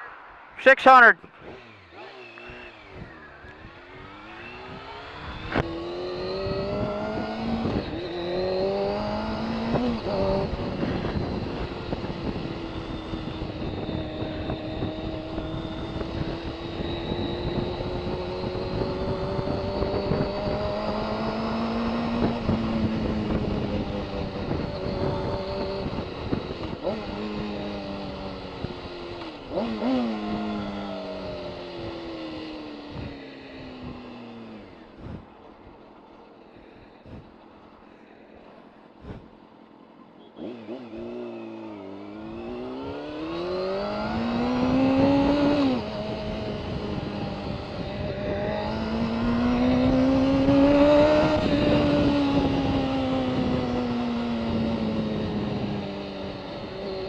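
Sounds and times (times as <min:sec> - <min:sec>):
motorcycle engine shifting gears: 0:01.2 - 0:57.0
wind on microphone: 0:02.9 - 0:29.0, 0:42.3 - 0:57.0.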